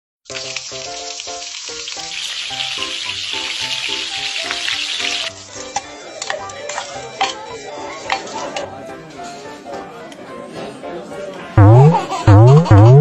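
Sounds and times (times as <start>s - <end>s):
food sizzling in frying pan: 0.3s - 7.4s
background music: 0.3s - 13.0s.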